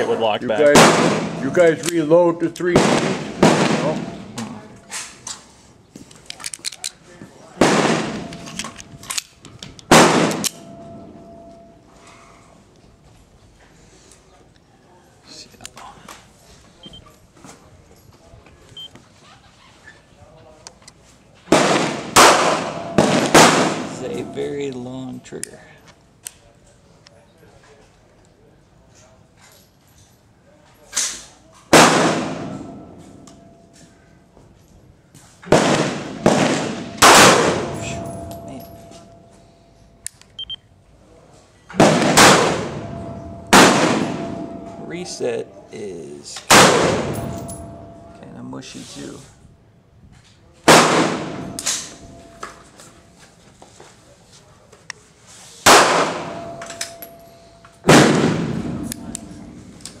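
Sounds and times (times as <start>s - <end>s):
pistol shot with ringing decay: 0.7s - 1.6s, 7.6s - 8.5s, 21.5s - 24.4s, 31.8s - 32.8s, 35.5s - 38.5s, 41.8s - 44.8s, 46.5s - 48.1s, 50.7s - 52.2s, 55.7s - 57.1s.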